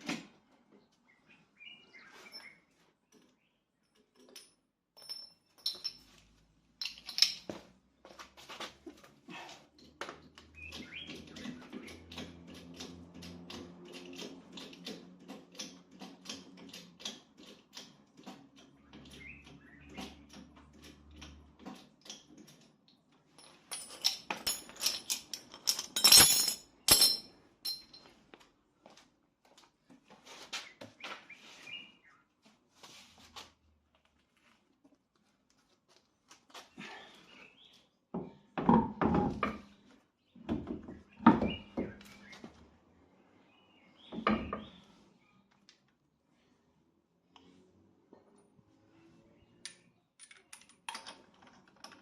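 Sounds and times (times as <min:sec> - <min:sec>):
birds chirping: 0:10.5 - 0:12.2.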